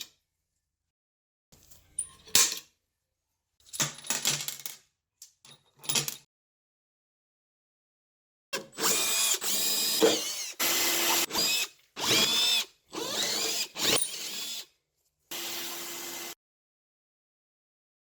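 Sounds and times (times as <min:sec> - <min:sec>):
power drill running: 0:08.8 - 0:14.7, 0:15.3 - 0:16.4.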